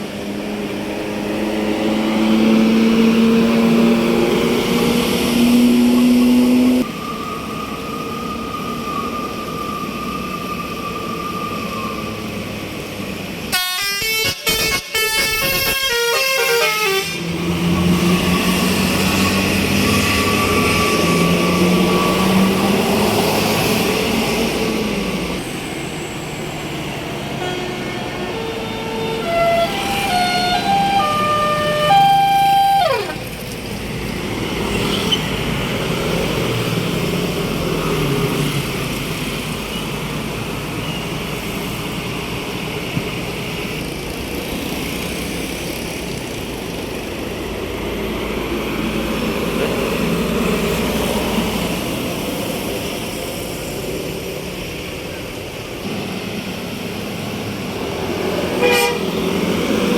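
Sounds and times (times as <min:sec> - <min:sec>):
passing buses and traffic rumble: 0:00.0 - 0:59.9
musical bus horn playing tune: 0:13.5 - 0:17.3, 0:27.4 - 0:33.3, 0:58.6 - 0:59.2.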